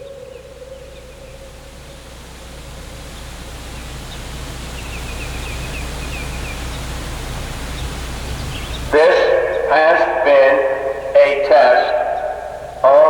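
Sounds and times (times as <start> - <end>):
rushing noise with low rumble: 0.0 - 13.0
warning siren steady tone: 0.0 - 13.0.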